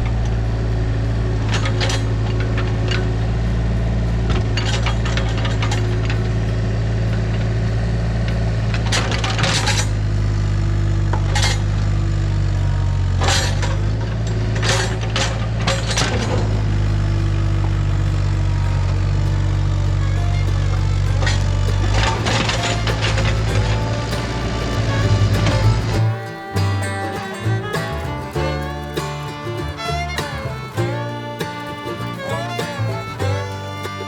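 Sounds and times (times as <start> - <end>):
earth-moving machine engine running: 0.0 - 26.2.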